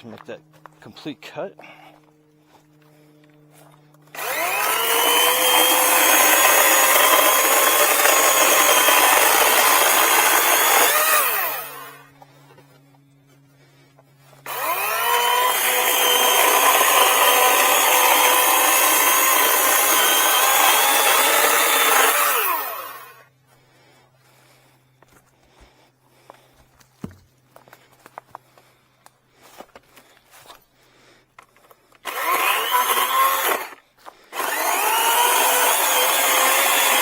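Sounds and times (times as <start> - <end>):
chainsaw cutting log: 4.0 - 12.4, 13.6 - 23.2, 25.6 - 27.2, 31.4 - 37.0.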